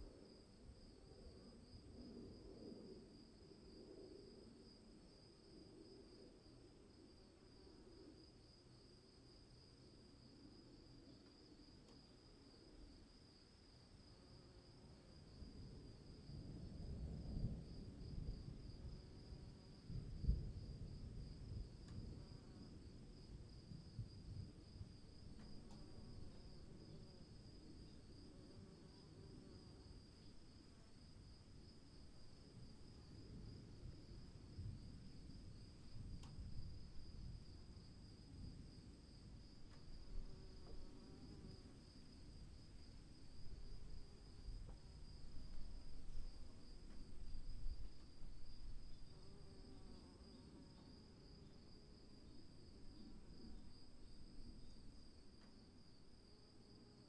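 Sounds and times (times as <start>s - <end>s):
faint click: 36.2s - 36.4s.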